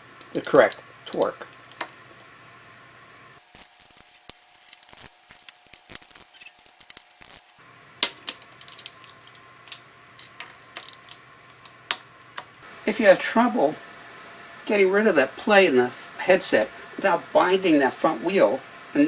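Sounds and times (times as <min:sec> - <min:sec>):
torque wrench clicking: 0:03.4 - 0:07.6.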